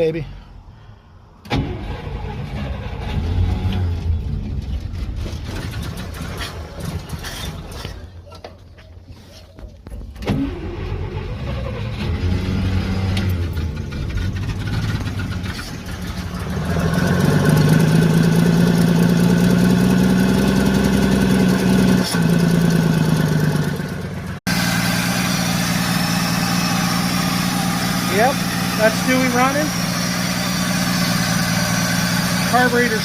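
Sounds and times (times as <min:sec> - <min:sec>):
car engine running: 0:12.2 - 0:33.0.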